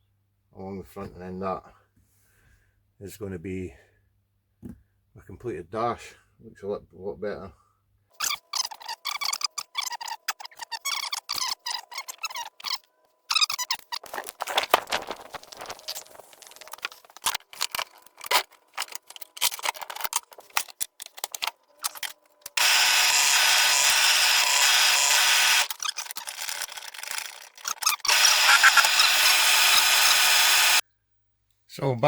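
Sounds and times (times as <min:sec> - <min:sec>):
clicks of parts being handled: 0:16.5 - 0:22.6
power tool running: 0:22.5 - 0:30.8.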